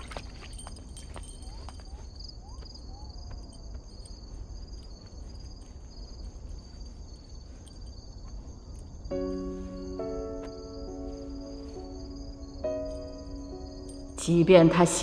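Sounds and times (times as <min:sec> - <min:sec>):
insects chirring: 0:00.0 - 0:15.0
soft music with held notes: 0:09.1 - 0:15.0.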